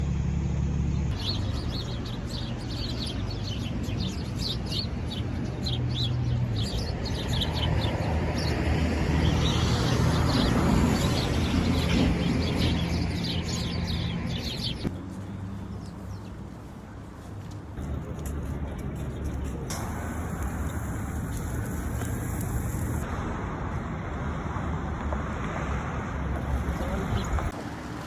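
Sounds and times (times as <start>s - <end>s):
small birds chirping: 1.0s - 15.0s, 17.8s - 23.1s, 26.2s - 27.6s
broad rushing noise: 17.8s - 24.7s.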